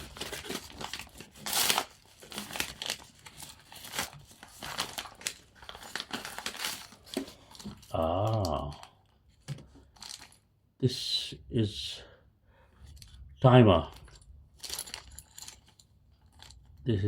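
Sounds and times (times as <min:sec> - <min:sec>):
packaging crinkling and tearing: 0:00.0 - 0:08.9.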